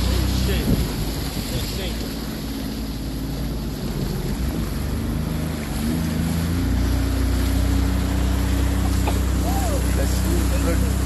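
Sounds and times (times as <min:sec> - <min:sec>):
wind on microphone: 0:00.0 - 0:02.7
jet ski engine running: 0:00.0 - 0:11.0.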